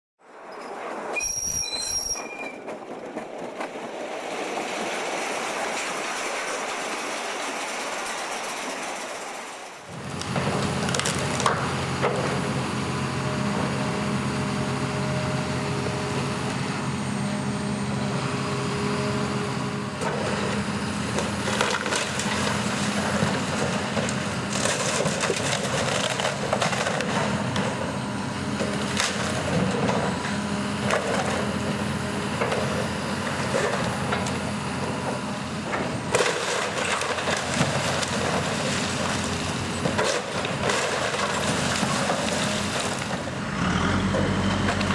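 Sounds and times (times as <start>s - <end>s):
demolition machinery engine running: 2.7s - 44.9s
wooden timbers cracking and splintering: 10.2s - 12.4s, 20.0s - 27.9s, 28.6s - 31.4s, 35.7s - 43.3s.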